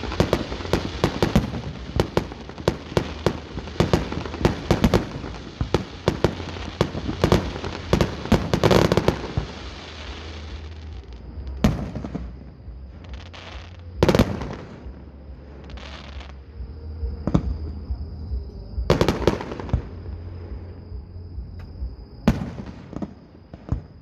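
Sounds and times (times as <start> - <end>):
fireworks bangs and crackling: 0.0 - 24.0
fireworks booms: 0.0 - 24.0.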